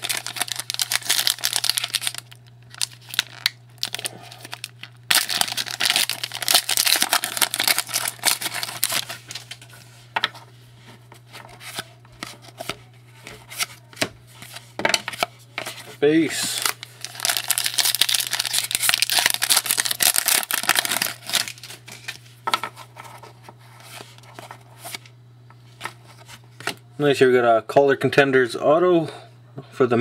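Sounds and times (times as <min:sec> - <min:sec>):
wrapper crinkling and tearing: 0:00.0 - 0:09.7, 0:16.4 - 0:22.2
low steady hum: 0:00.0 - 0:30.0.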